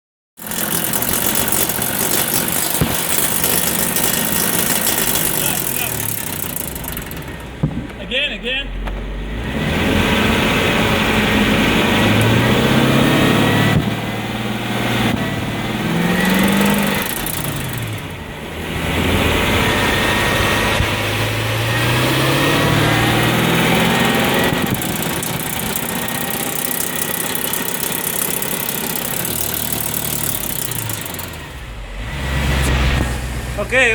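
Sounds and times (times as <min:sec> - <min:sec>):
driveshaft rattle: 0:00.4 - 0:08.2, 0:15.0 - 0:20.8, 0:21.8 - 0:33.8
car engine accelerating: 0:00.4 - 0:33.9.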